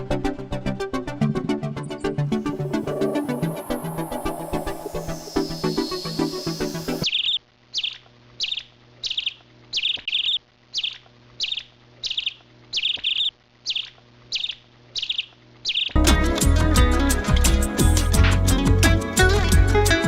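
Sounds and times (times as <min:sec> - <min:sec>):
music: 0:00.0 - 0:07.0, 0:16.0 - 0:20.0
faint steady hum: 0:00.9 - 0:09.8
small bird chirping: 0:02.4 - 0:16.0.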